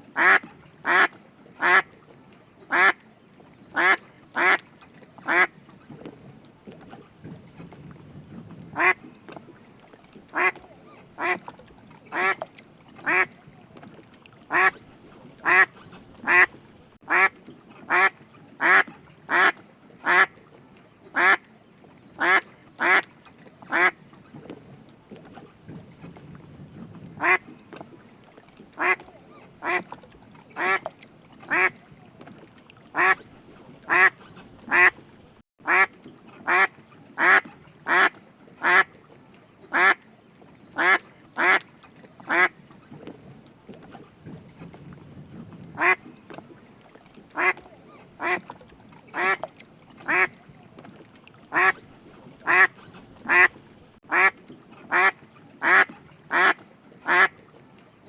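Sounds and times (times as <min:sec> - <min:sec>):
duck quacking: 0:00.2 - 0:01.9, 0:02.7 - 0:03.0, 0:03.8 - 0:04.6, 0:05.3 - 0:05.5, 0:08.8 - 0:09.0, 0:10.3 - 0:10.6, 0:11.2 - 0:11.4, 0:12.1 - 0:12.4, 0:13.0 - 0:13.3, 0:14.5 - 0:14.8, 0:15.4 - 0:16.5, 0:17.1 - 0:17.3, 0:17.9 - 0:20.3, 0:21.2 - 0:21.4, 0:22.2 - 0:23.0, 0:27.2 - 0:27.4, 0:28.8 - 0:29.0, 0:29.6 - 0:29.8, 0:33.0 - 0:33.2, 0:33.9 - 0:35.0, 0:35.6 - 0:38.9, 0:39.8 - 0:40.0, 0:40.8 - 0:41.6, 0:42.3 - 0:42.5, 0:45.8 - 0:46.0, 0:47.4 - 0:47.6, 0:48.2 - 0:48.4, 0:50.1 - 0:50.3, 0:51.5 - 0:51.8, 0:52.4 - 0:57.3.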